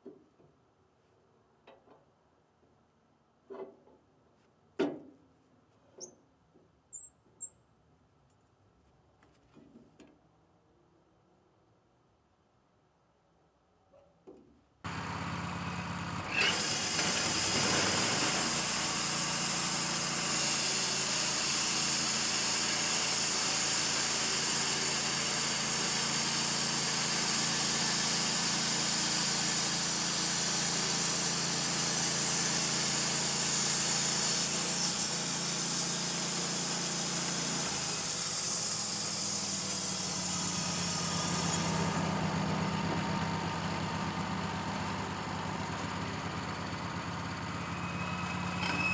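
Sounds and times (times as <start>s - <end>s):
band sawmill sawing log: 14.9s - 48.9s.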